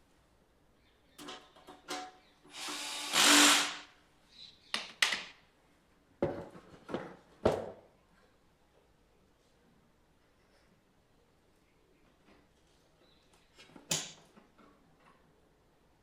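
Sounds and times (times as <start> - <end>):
power screwdriver driving screw: 2.5 - 3.8.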